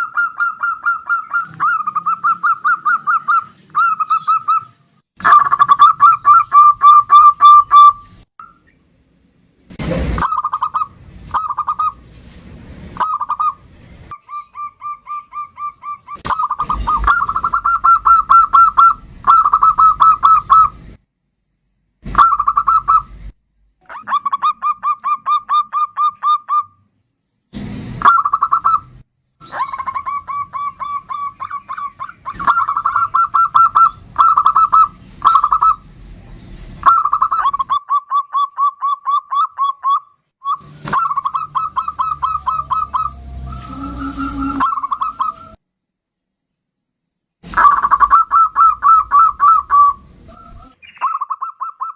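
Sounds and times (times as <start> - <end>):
dove cooing: 0.0 - 8.0, 14.3 - 20.8, 29.4 - 35.8, 36.8 - 45.6, 47.5 - 51.9.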